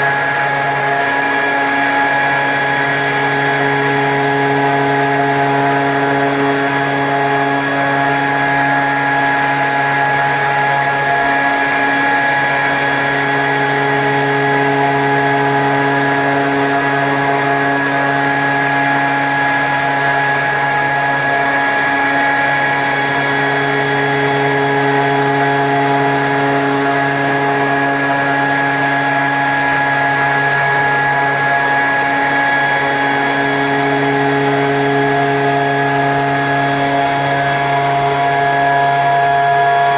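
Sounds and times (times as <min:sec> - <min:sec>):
spindle motor drilling stone: 0:00.0 - 0:39.9.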